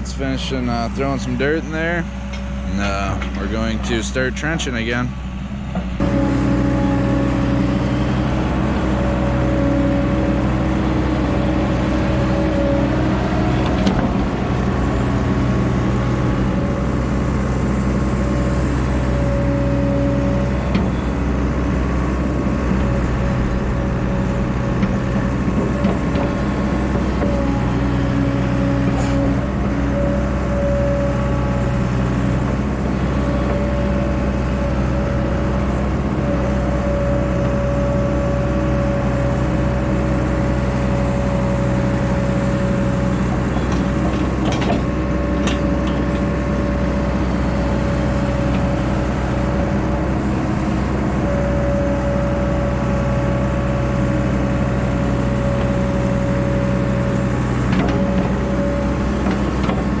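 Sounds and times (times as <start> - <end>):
excavator diesel engine running: 0.0 - 60.0
hydraulic whine: 0.0 - 60.0.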